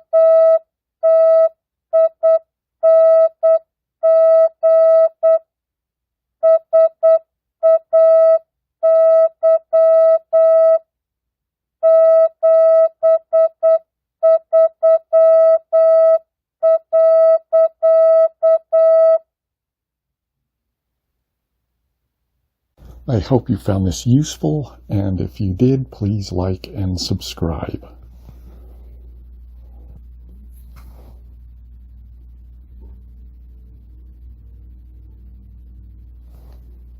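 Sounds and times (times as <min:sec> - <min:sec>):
morse code beeping tone: 0:00.0 - 0:05.4, 0:06.4 - 0:10.8, 0:11.8 - 0:19.3.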